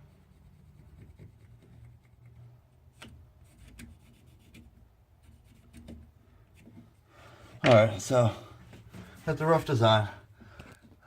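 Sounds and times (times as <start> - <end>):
carving blade scraping wood: 0.3 - 6.9.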